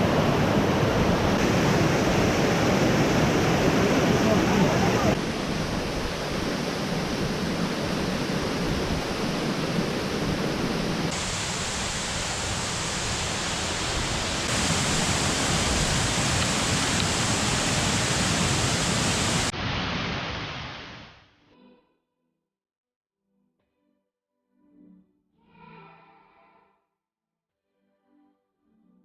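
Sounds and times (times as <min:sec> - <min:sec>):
waterfall roaring: 0:00.0 - 0:21.1.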